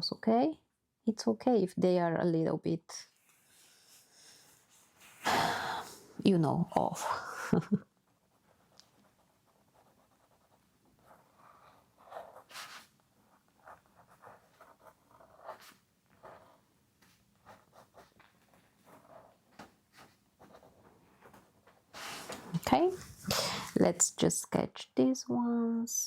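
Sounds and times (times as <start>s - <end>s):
pencil scratching on paper: 8.2s - 16.7s, 17.4s - 19.4s, 20.0s - 23.4s.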